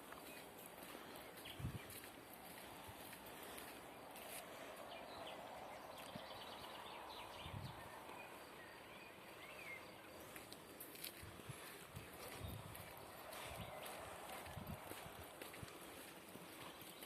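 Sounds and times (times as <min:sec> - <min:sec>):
bird chirps: 0:05.0 - 0:10.4.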